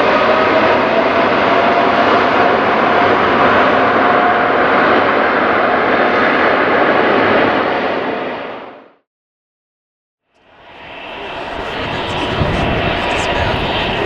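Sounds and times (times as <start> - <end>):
faint steady whine: 10.4 - 14.0
jet engines running: 10.4 - 14.0.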